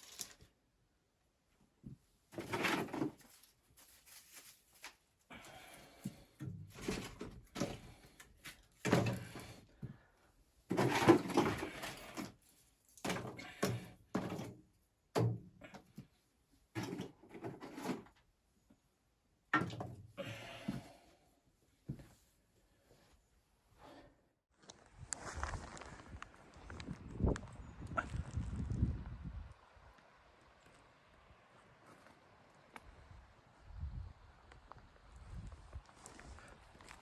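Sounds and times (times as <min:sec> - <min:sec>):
rustling and scraping: 0:02.0 - 0:05.2, 0:10.7 - 0:14.6, 0:16.8 - 0:18.3.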